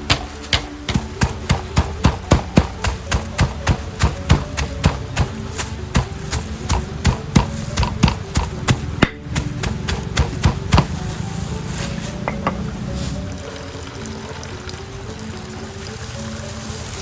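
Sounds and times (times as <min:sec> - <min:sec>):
knife chopping on cutting board: 0:00.1 - 0:11.0.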